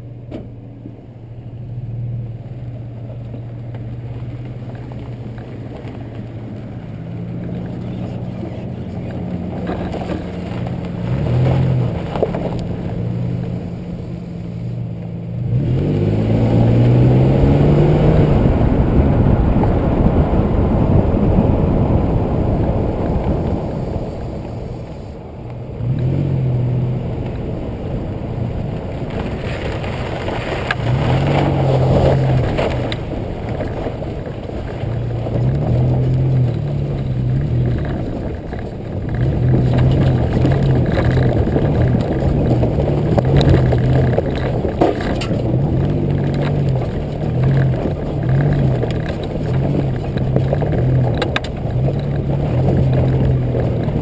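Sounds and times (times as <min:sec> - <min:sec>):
car engine droning: 0:00.0 - 0:54.0
knocks and scrapes: 0:07.3 - 0:13.8, 0:29.0 - 0:54.0.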